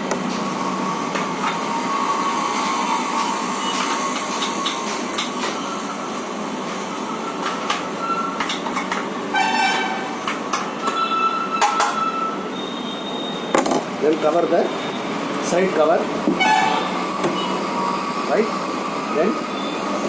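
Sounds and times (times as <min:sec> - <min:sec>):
horn-like tone: 0:09.3 - 0:10.2, 0:10.8 - 0:13.5, 0:16.4 - 0:18.0.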